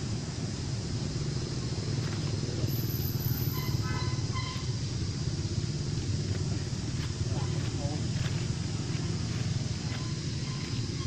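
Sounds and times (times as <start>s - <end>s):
low outdoor rumble: 0.0s - 11.0s
high-pitched chirping call: 2.7s - 4.8s.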